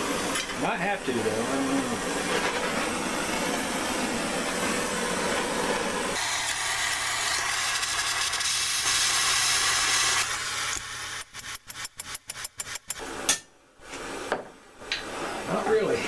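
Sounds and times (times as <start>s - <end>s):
propane torch hissing: 6.1s - 13.0s
sharp clicks: 10.1s - 13.0s.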